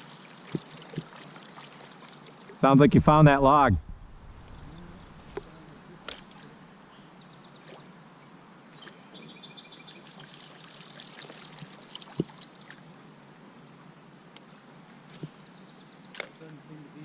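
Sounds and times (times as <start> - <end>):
river water flowing: 0.0 - 2.6.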